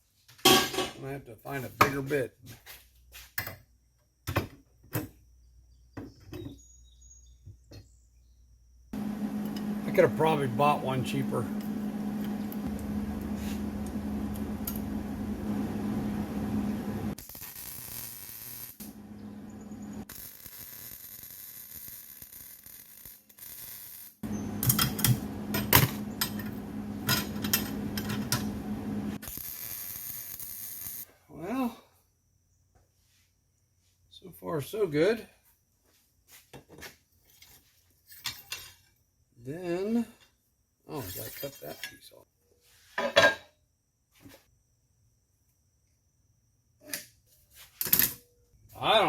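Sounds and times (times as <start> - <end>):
power tool motor humming: 9.0 - 17.2, 24.2 - 29.2.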